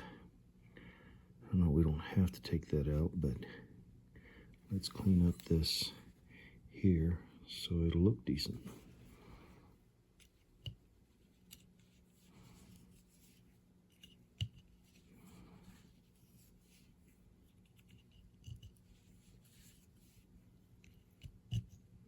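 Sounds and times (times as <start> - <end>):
soft rubbing: 4.7 - 6.3, 8.4 - 22.0.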